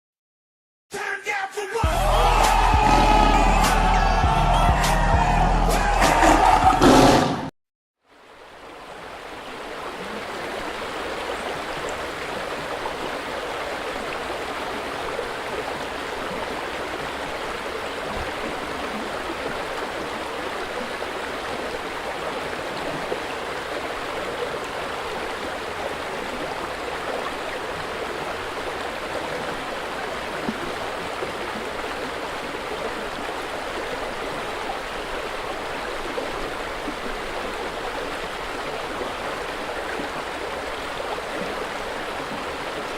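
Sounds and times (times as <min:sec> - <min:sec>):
river water flowing: 0:01.8 - 0:07.1, 0:08.0 - 0:42.9.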